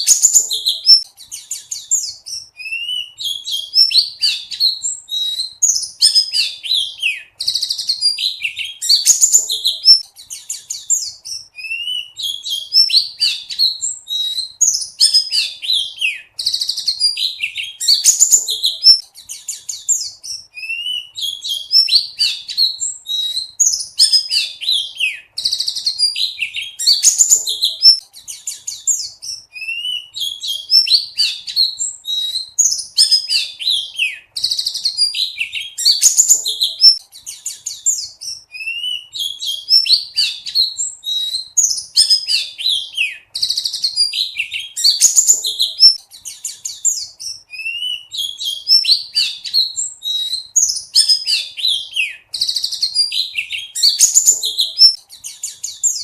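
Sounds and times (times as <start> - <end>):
white-eye twittering song: 0.0 - 56.0.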